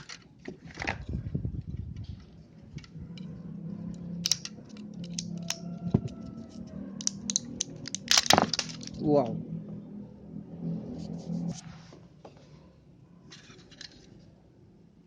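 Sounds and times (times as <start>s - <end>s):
plastic clicks and snips: 6.5s - 8.7s.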